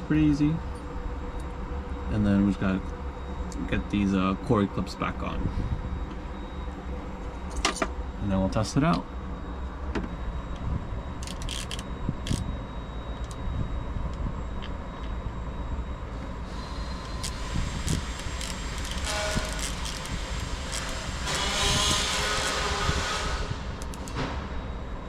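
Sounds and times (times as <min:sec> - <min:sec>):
steady low rumble: 0:00.0 - 0:25.0
clicks and knocks of handled parts: 0:11.2 - 0:12.4, 0:17.0 - 0:21.4, 0:23.8 - 0:24.2.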